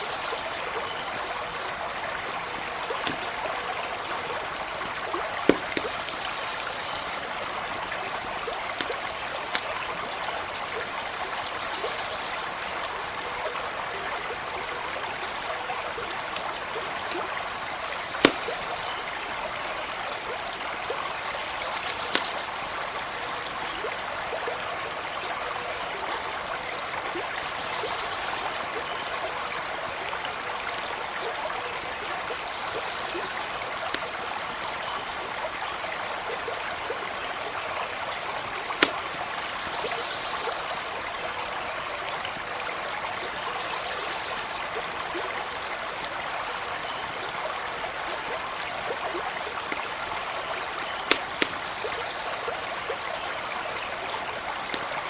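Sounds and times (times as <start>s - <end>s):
campfire crackling: 0.0s - 55.0s
stream running: 0.0s - 55.0s
sharp fire pops: 5.5s - 6.2s, 18.0s - 18.7s.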